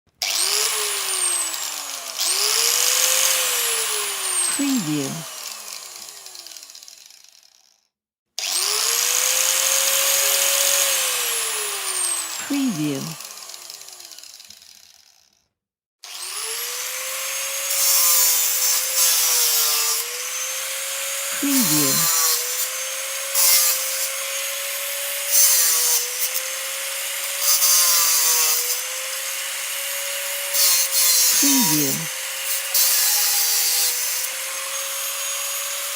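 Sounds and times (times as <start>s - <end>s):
small electric motor whining: 16.1s - 26.7s.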